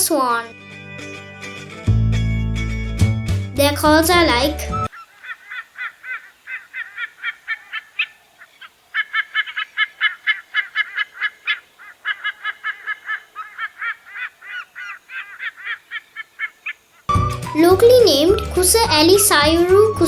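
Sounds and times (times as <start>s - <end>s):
eagle calling: 4.9s - 20.0s.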